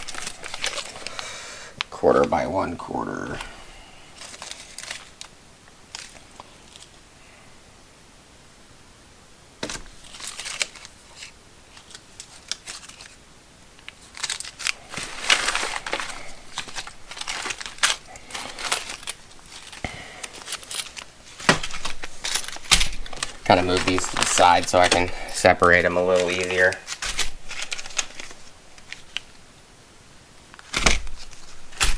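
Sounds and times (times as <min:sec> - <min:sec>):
plastic packaging crinkling: 0:00.0 - 0:01.7, 0:13.8 - 0:29.4, 0:30.6 - 0:31.9
steel bolts and nuts clinking: 0:14.2 - 0:29.0.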